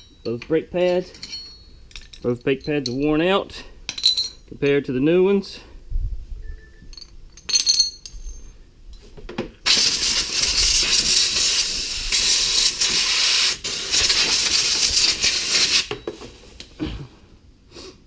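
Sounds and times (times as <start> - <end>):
compressed air hissing: 9.7 - 15.9.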